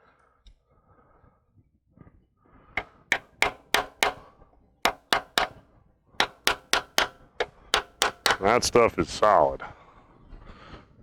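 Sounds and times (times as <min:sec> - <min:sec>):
hammer striking metal: 0:03.1 - 0:04.3, 0:04.9 - 0:05.6, 0:06.2 - 0:07.2, 0:07.8 - 0:08.6.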